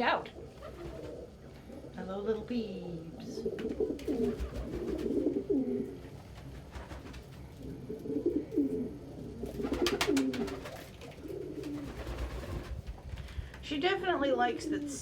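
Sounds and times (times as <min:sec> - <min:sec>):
pigeons cooing: 0:00.3 - 0:02.0, 0:02.8 - 0:12.8.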